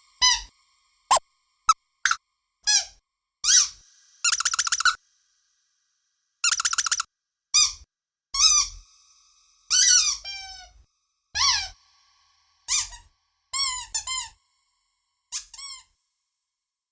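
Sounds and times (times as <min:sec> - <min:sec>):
squeaky dog toy squeaks: 0:02.0 - 0:02.9, 0:04.3 - 0:05.0, 0:06.4 - 0:07.0, 0:07.6 - 0:07.8, 0:08.4 - 0:08.8, 0:12.7 - 0:14.3, 0:15.4 - 0:15.8.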